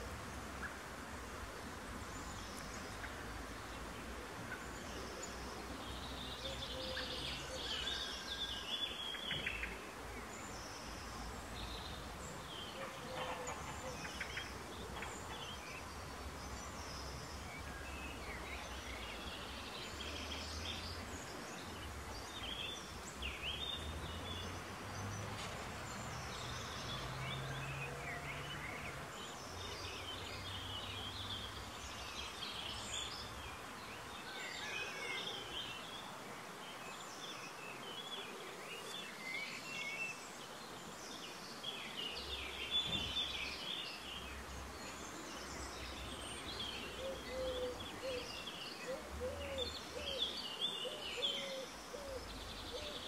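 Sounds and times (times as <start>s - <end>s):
small birds singing and chirping: 2.0s - 53.0s.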